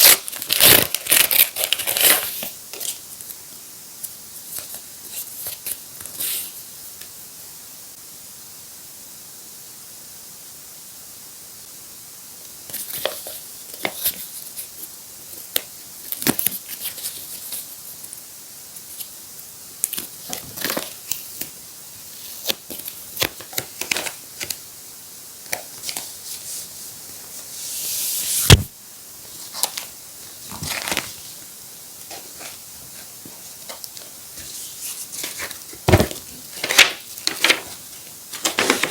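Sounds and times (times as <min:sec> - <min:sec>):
paper tearing: 0:00.0 - 0:02.5, 0:36.5 - 0:38.9
paper crinkling and rustling: 0:00.0 - 0:03.0, 0:19.9 - 0:21.6, 0:22.2 - 0:24.6, 0:29.3 - 0:38.9.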